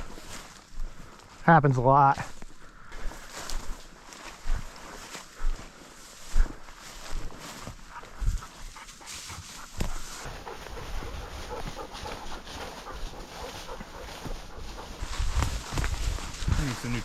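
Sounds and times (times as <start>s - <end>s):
rustling and snapping through brush: 6.9s - 17.0s
dog panting: 7.7s - 17.0s.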